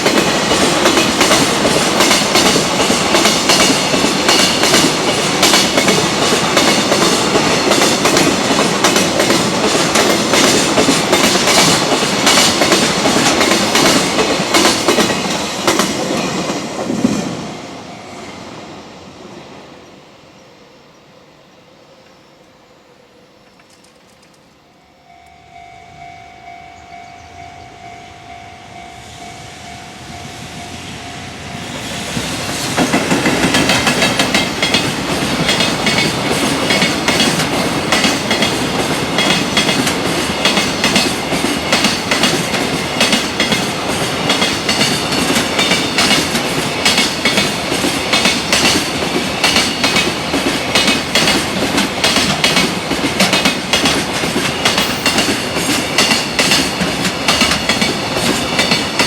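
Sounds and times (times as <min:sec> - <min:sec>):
train wheels clacking over rail joints: 0:00.0 - 0:17.2, 0:32.2 - 0:59.0
freight train passing: 0:00.0 - 0:59.0.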